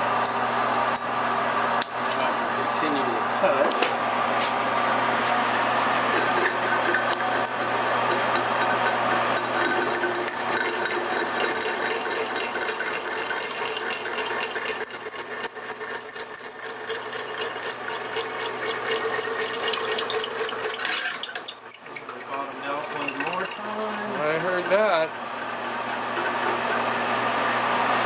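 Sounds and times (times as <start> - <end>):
motor hum: 0.0 - 28.0
hole saw cutting metal tubing: 6.0 - 27.6.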